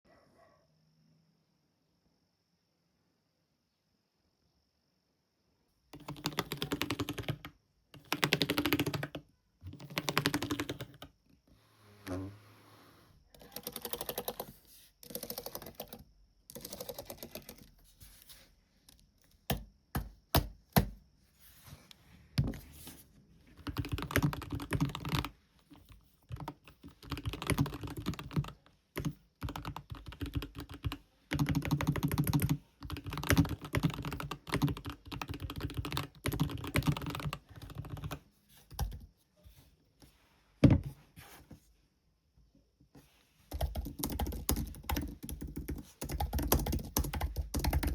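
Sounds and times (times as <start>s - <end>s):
typing on keyboard: 5.9s - 11.2s, 13.4s - 17.8s, 23.6s - 39.1s, 43.5s - 47.9s.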